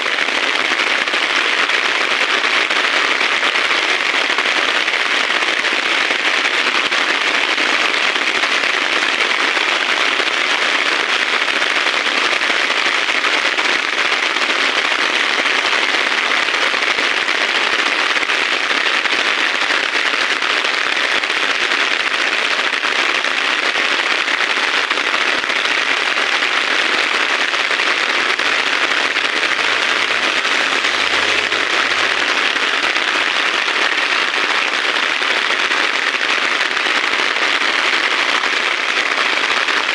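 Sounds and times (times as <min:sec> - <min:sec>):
heavy rain pouring: 0:27.1 - 0:35.5.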